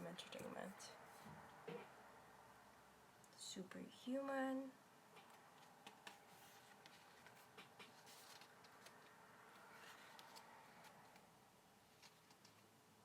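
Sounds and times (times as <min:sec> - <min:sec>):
booklet pages being turned: 0:05.2 - 0:12.7.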